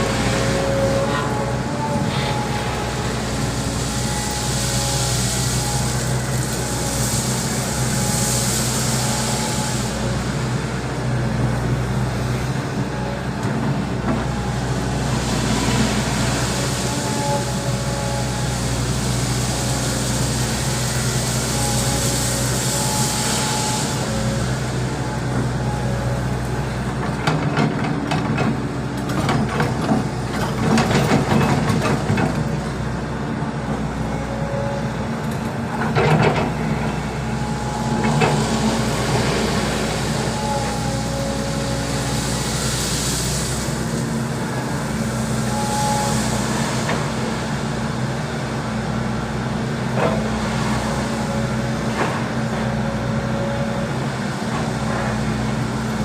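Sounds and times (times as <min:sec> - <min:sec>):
excavator diesel engine: 0:00.0 - 0:56.0.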